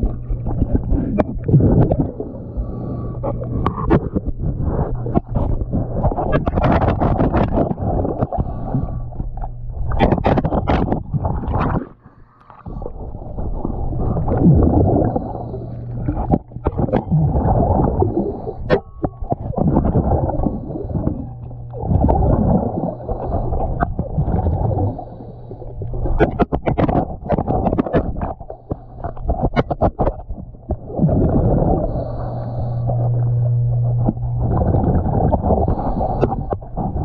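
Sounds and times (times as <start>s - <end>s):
bubbles gurgling and clicking: 0.0s - 37.0s
steady low hum: 0.0s - 37.0s
diver breathing through regulator: 0.8s - 6.2s, 7.2s - 9.3s, 11.7s - 27.1s, 30.8s - 37.0s.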